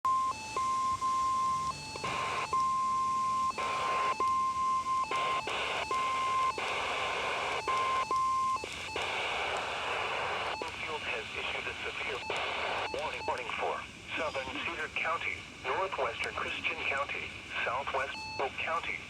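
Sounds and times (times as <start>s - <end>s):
radio static: 1.8s - 19.0s
steady alarm beep: 18.2s - 18.5s.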